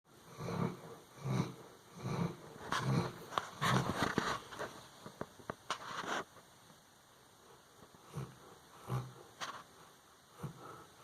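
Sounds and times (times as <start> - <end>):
puppy snoring: 0.1 - 4.4, 7.9 - 11.0.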